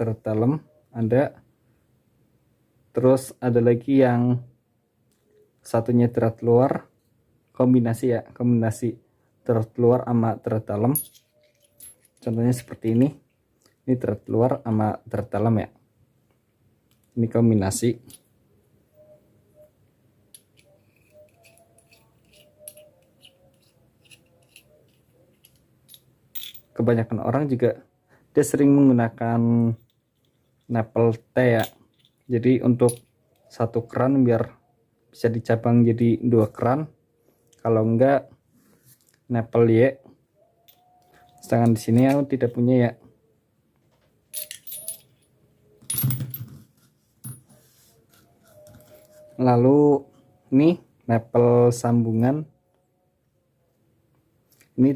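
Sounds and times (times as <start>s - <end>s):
metal pipe fittings clicking: 20.3s - 26.8s, 44.4s - 45.2s.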